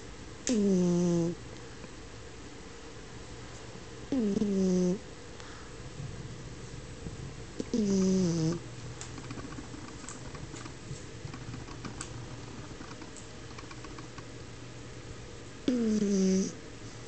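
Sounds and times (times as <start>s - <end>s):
dog snoring: 0.5s - 1.4s, 4.1s - 5.0s, 7.6s - 8.6s, 15.6s - 16.6s
quiet breathing with faint clicks: 5.4s - 5.7s.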